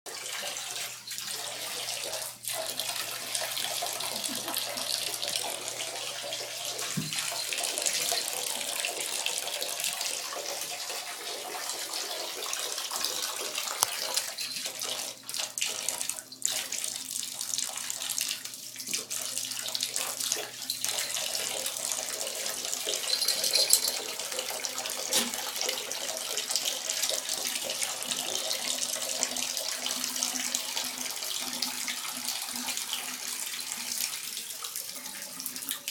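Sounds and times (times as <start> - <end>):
water running and splashing: 0.1 - 35.9.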